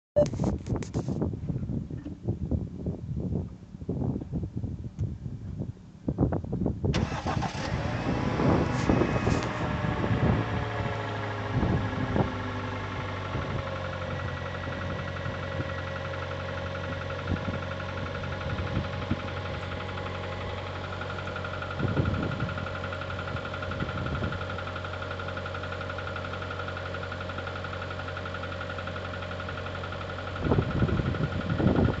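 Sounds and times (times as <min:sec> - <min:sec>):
car engine idling with knocks: 0:07.8 - 0:32.0.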